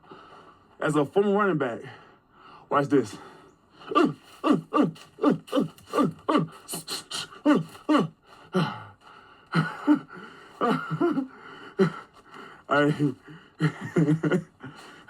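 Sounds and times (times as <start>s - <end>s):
man gasping and grunting: 3.1s - 15.0s.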